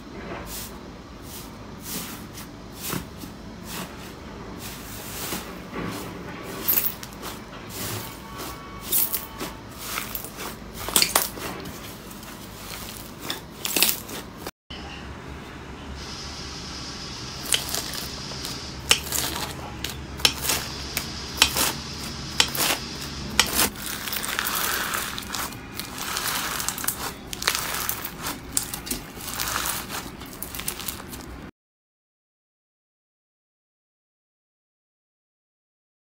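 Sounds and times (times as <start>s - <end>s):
low hum: 14.7s - 24.7s.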